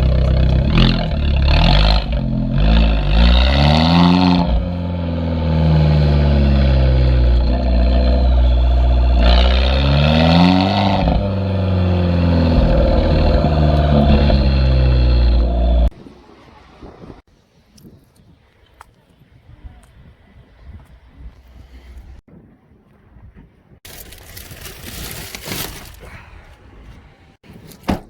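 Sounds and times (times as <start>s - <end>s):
car engine idling and revving: 0.0s - 16.0s.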